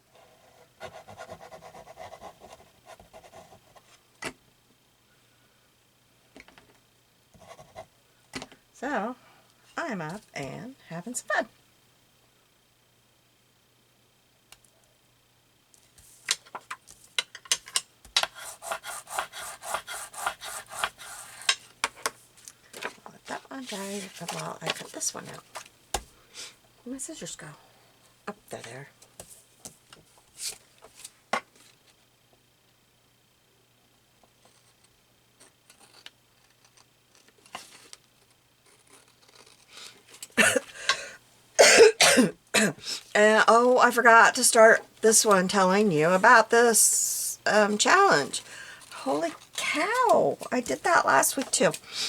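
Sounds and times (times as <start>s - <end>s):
paper rustling: 22.7s - 25.7s
person coughing: 40.4s - 41.0s, 41.6s - 42.8s.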